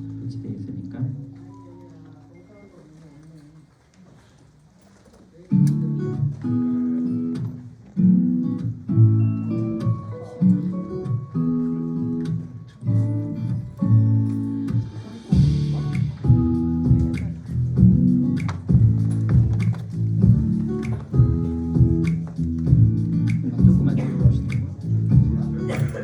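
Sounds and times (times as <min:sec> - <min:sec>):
strummed acoustic guitar chords: 0:05.5 - 0:26.0.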